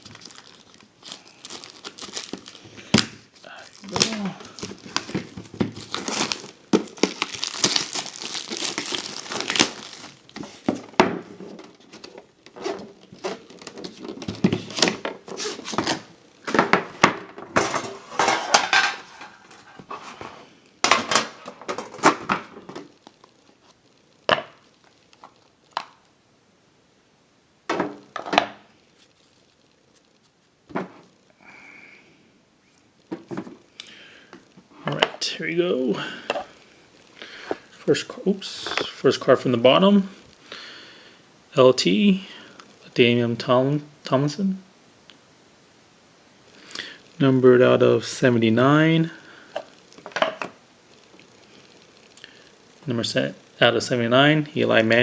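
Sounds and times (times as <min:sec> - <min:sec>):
plastic wrapping tearing and crumpling: 0:00.0 - 0:10.7, 0:28.9 - 0:30.5
box knocks and rustles: 0:04.7 - 0:05.9, 0:33.1 - 0:33.6.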